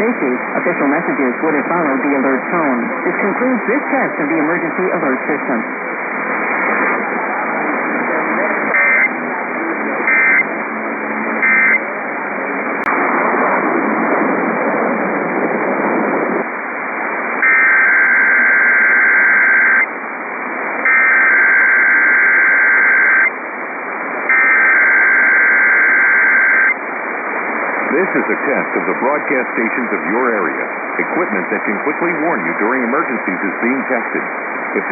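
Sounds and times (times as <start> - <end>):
radio static hiss: 0.0 - 34.9
data bursts: 8.7 - 9.1, 10.1 - 10.5, 11.4 - 11.8, 17.4 - 19.9, 20.8 - 23.3, 24.3 - 26.8.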